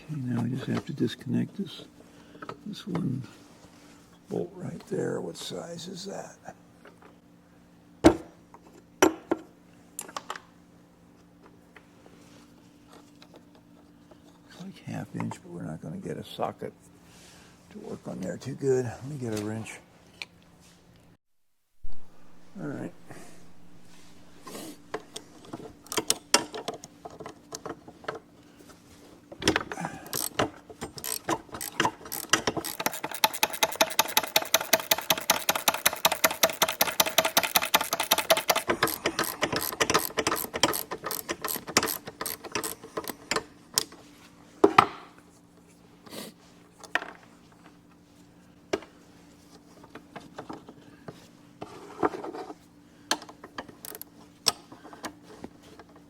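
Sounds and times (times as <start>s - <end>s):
faint steady hum: 21.8s - 33.8s
ratchet wrench clicking: 30.1s - 43.2s, 53.8s - 54.0s.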